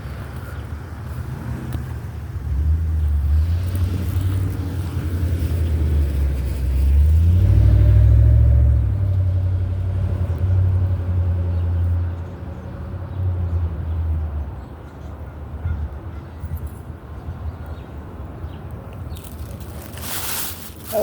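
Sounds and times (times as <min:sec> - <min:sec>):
motor vehicle passing: 0:00.9 - 0:11.8.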